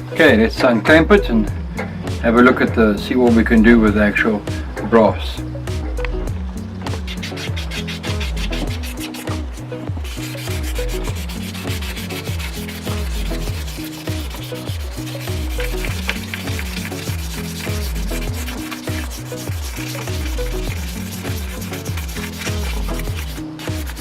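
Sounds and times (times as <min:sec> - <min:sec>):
background music with bass line: 0:00.0 - 0:24.0
sandpaper rubbing on metal: 0:06.9 - 0:24.0.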